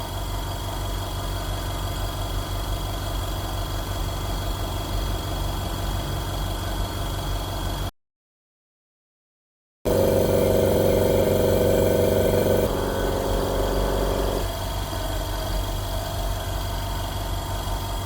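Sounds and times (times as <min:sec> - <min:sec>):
air compressor motor humming: 0:09.9 - 0:18.0.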